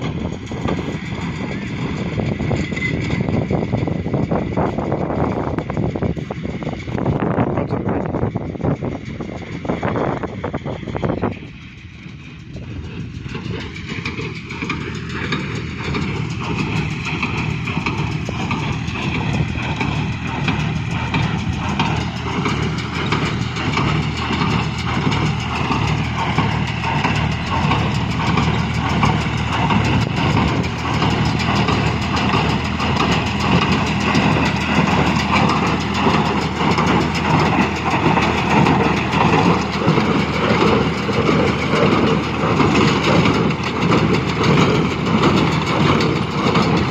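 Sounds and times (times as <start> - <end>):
tractor diesel engine running: 0.0 - 46.9
baler clattering: 10.9 - 46.9.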